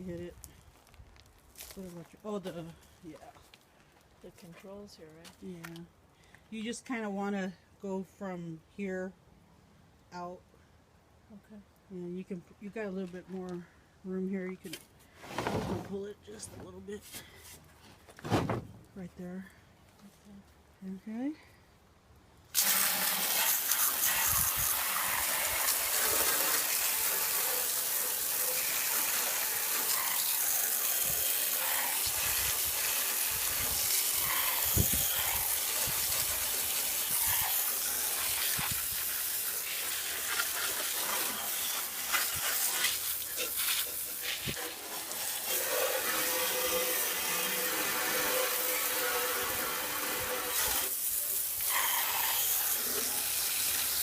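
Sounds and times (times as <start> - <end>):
hose water spraying: 22.5 - 54.0.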